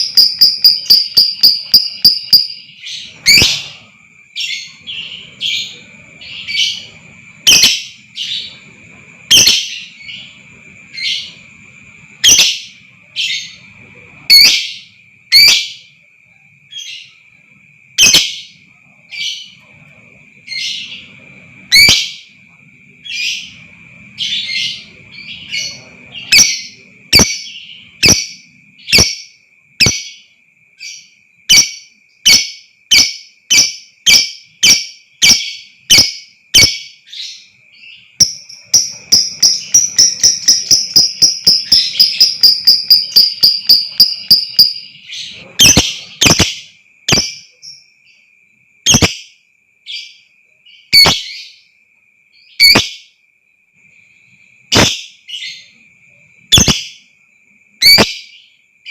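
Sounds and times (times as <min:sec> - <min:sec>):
high thin ringing tone: 0:00.0 - 0:02.7, 0:38.2 - 0:45.0
lovebird shrill calls: 0:00.0 - 0:03.8, 0:07.4 - 0:08.0, 0:09.3 - 0:09.8, 0:38.2 - 0:44.9, 0:45.6 - 0:47.4, 0:48.9 - 0:49.2, 0:54.7 - 0:55.0, 0:56.5 - 0:56.9
bird rapid trill: 0:00.0 - 0:08.6, 0:09.2 - 0:11.5, 0:23.0 - 0:47.9, 0:48.9 - 0:49.4, 0:50.8 - 0:51.6, 0:54.6 - 0:55.8, 0:56.4 - 0:57.1, 0:57.8 - 0:58.9.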